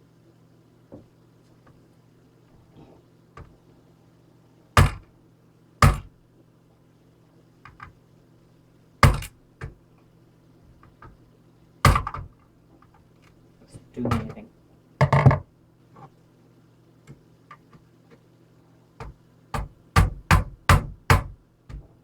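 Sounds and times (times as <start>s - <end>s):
hammer knocking laptop case: 4.8s - 5.0s, 5.8s - 6.1s, 9.0s - 9.8s, 11.8s - 12.3s, 19.0s - 21.9s.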